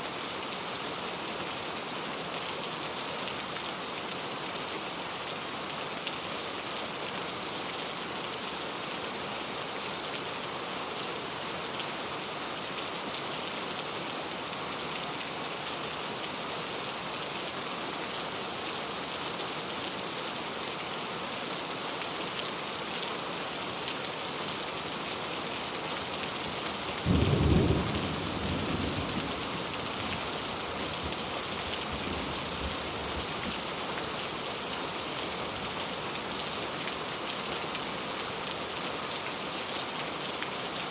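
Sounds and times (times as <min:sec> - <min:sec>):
steady rain: 0:00.0 - 0:40.9
thunder rumbling: 0:27.1 - 0:29.6.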